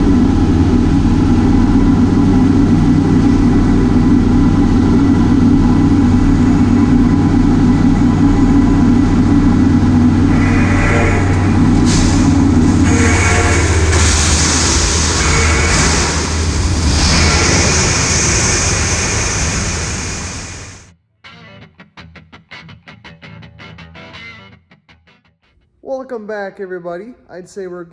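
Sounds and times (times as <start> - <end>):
diesel engine running: 0.0 - 20.9.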